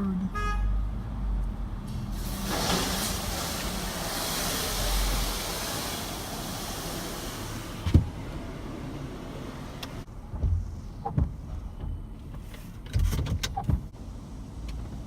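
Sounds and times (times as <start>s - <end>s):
car wash water jets spraying: 1.9s - 10.1s.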